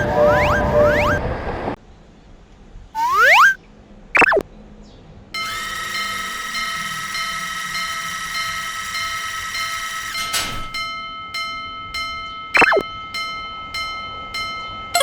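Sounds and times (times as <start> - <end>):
railroad crossing bell ringing: 0.0 - 1.2, 5.4 - 15.0
sustained high tone: 0.0 - 1.3, 3.0 - 3.6, 12.6 - 12.8.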